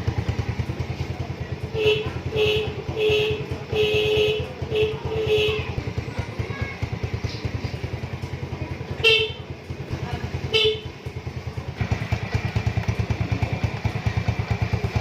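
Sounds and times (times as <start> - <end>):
motorcycle engine running: 0.0 - 15.0
electric horn honks: 1.8 - 5.8, 10.5 - 10.9.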